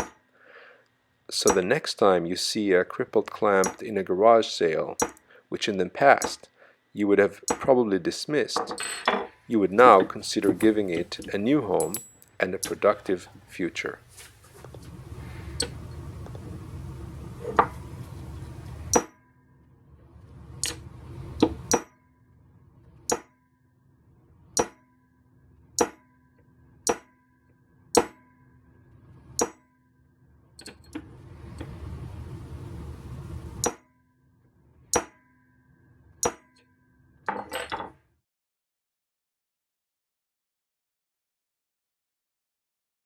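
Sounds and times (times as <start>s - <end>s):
hammer striking chisel on steel: 1.4s - 1.7s, 3.6s - 3.8s, 5.0s - 5.2s, 6.2s - 6.4s, 7.5s - 7.7s, 9.9s - 12.9s, 18.9s - 19.1s, 21.4s - 21.9s, 23.1s - 23.3s, 24.6s - 24.8s, 25.8s - 26.0s, 26.9s - 27.1s, 28.0s - 28.2s, 29.4s - 29.6s, 34.9s - 35.1s, 36.2s - 36.4s.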